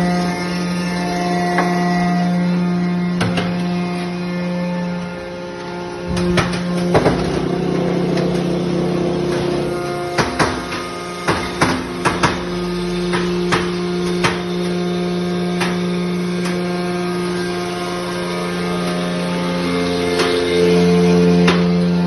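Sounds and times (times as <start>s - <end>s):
machine hum: 0.0s - 22.0s
sharp metallic knocks: 9.4s - 14.8s.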